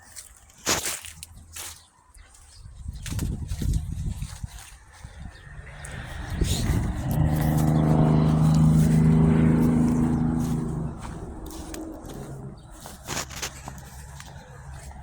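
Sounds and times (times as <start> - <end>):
engine humming: 3.0 - 15.0.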